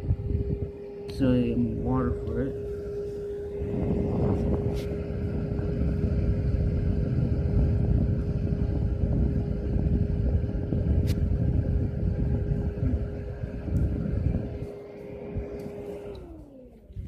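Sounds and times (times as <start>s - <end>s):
air conditioner fan running: 0.0s - 17.0s.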